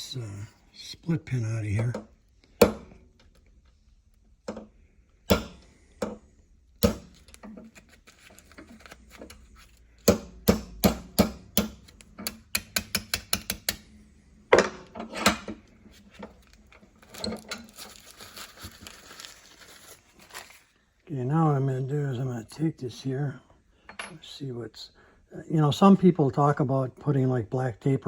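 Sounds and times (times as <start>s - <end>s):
hammer striking metal pin: 2.6s - 3.0s, 5.3s - 6.2s, 6.8s - 7.2s, 10.0s - 13.9s.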